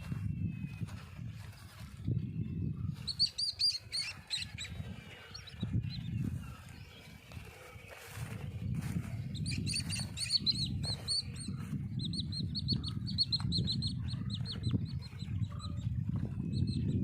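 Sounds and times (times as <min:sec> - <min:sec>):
small birds chirping: 0:00.0 - 0:17.0
steady low rumble: 0:04.2 - 0:17.0.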